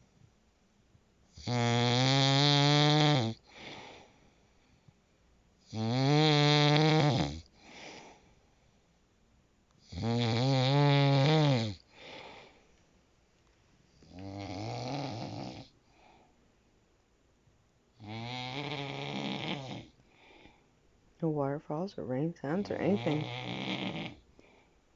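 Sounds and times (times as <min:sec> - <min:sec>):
faint breath: 0:03.4 - 0:05.1, 0:07.5 - 0:09.0, 0:11.9 - 0:13.0, 0:15.8 - 0:16.5, 0:20.0 - 0:20.8, 0:24.3 - 0:24.9
person snoring: 0:05.7 - 0:07.4, 0:09.9 - 0:12.4, 0:14.1 - 0:15.7, 0:18.0 - 0:19.9, 0:22.7 - 0:24.2.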